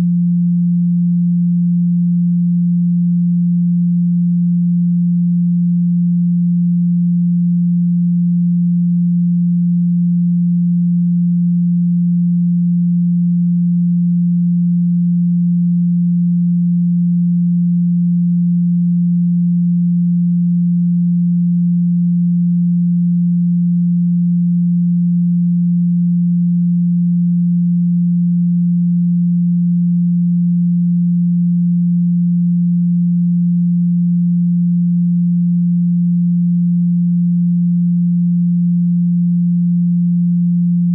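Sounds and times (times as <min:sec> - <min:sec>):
steady pure sine tone: 0:00.0 - 0:40.9.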